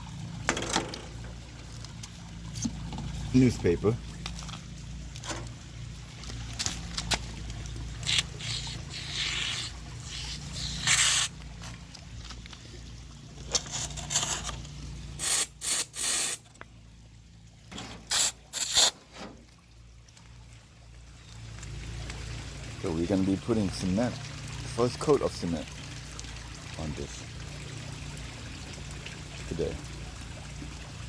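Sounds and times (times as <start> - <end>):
spray foam hissing spurts: 8.0 - 11.3, 15.2 - 16.4, 18.1 - 19.0.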